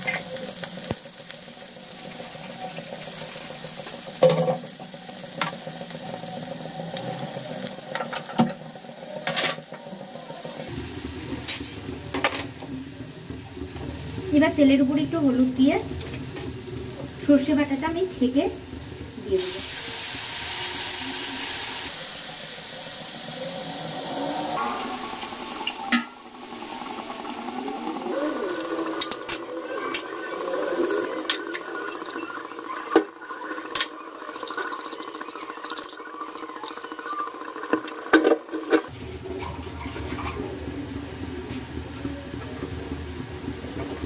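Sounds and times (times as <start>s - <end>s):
hot oil sizzling: 0.0s - 44.0s
liquid rushing: 15.3s - 36.0s
kitchen utensils clanking: 24.4s - 35.0s.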